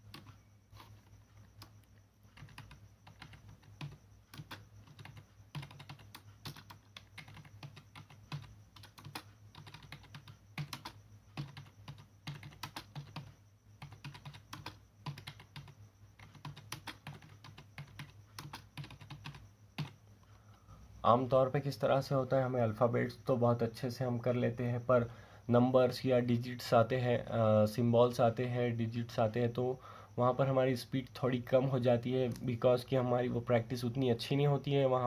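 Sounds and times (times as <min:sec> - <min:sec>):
computer keyboard typing: 0:00.0 - 0:00.4, 0:01.0 - 0:20.0.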